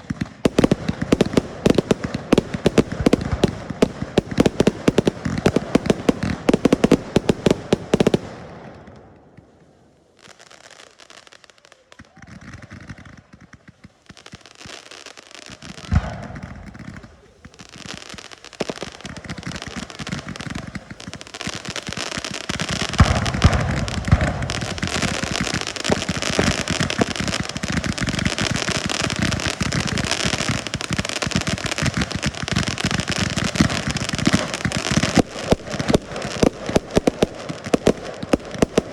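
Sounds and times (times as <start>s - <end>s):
fireworks bangs and crackles: 0.0s - 38.9s.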